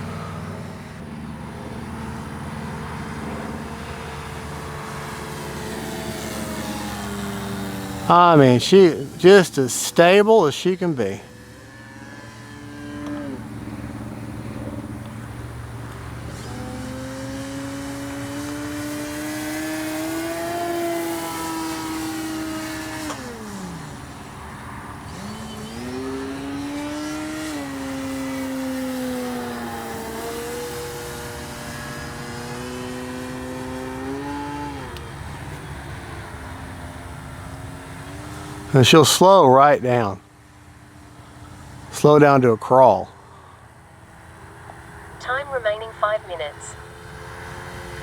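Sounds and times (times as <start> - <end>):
model plane motor whining: 0.0 - 10.2, 10.8 - 38.7.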